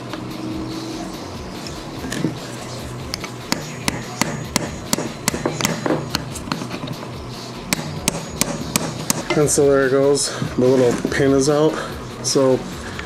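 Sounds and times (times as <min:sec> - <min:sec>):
hammer tapping steel pin punch: 0:03.2 - 0:06.6, 0:07.7 - 0:09.4.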